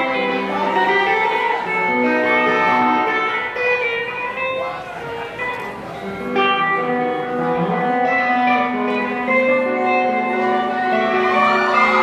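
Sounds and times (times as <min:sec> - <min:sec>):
crowd cheering: 0:00.0 - 0:03.2, 0:10.6 - 0:12.0
guitar ringing sustained notes: 0:00.0 - 0:12.0
rock band playing live: 0:00.0 - 0:12.0.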